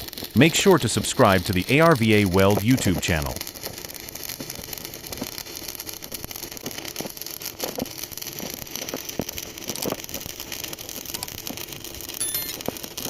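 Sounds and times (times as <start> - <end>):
welding arc crackling hiss: 0.0 - 13.0.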